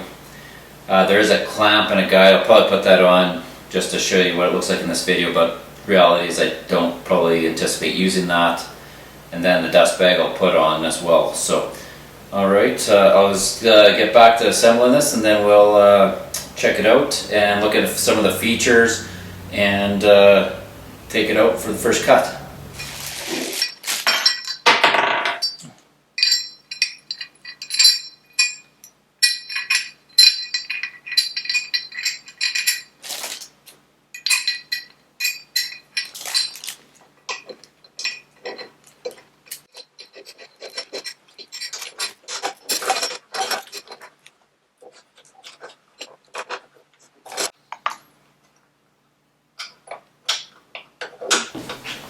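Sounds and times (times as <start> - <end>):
metal parts and tools clinking: 22.7 - 46.6.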